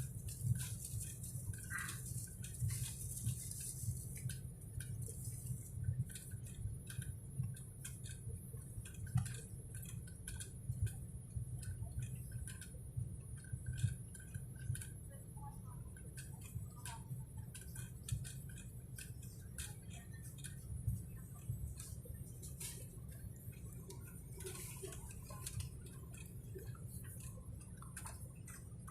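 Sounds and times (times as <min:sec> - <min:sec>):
airliner cabin drone: 0:00.0 - 0:28.9
sharp clicks and ticks: 0:06.0 - 0:12.8, 0:16.0 - 0:28.9.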